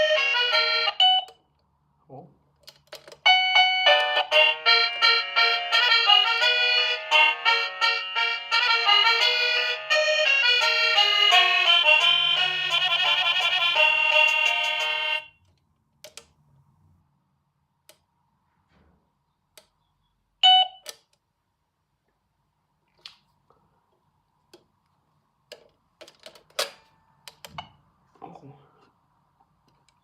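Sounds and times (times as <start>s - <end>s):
doorbell chime tune: 3.3s - 10.7s.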